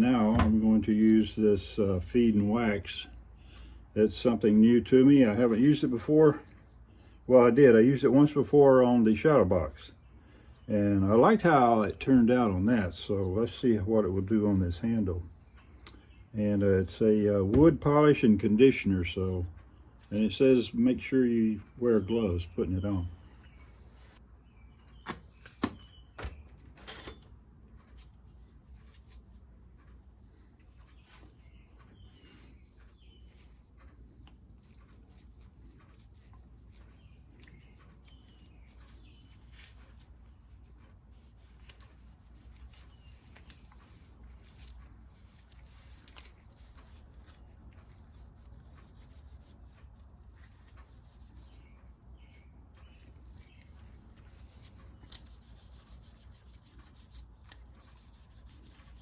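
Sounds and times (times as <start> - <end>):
small birds chirping: 14.8 - 16.4, 19.4 - 26.7, 27.3 - 59.0
hand rubbing wood: 27.8 - 59.0.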